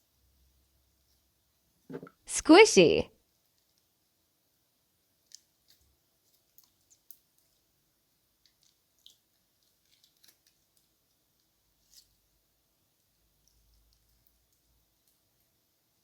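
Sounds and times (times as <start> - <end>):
slime clicking and crackling: 8.4 - 12.2.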